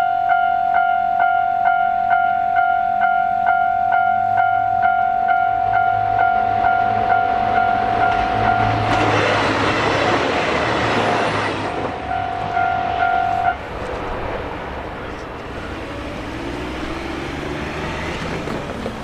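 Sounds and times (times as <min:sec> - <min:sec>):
train wheel and rail noise: 0:00.0 - 0:19.0
steady warning tone: 0:12.0 - 0:19.0.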